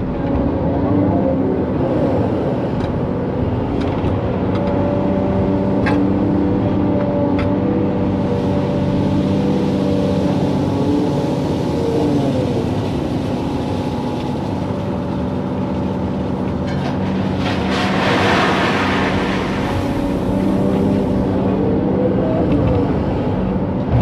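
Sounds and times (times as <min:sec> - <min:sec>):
excavator diesel engine: 0:00.0 - 0:24.0
rattling rushing noise: 0:16.8 - 0:21.4.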